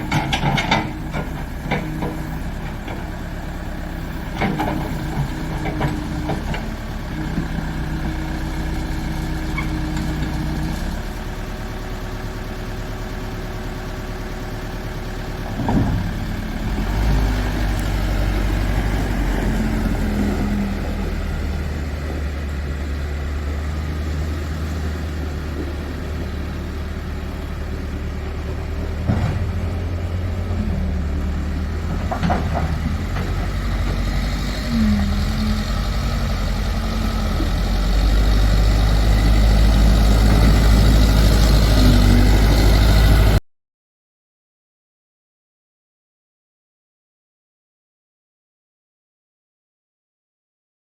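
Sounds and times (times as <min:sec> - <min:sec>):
diesel engine droning: 0:00.0 - 0:43.4.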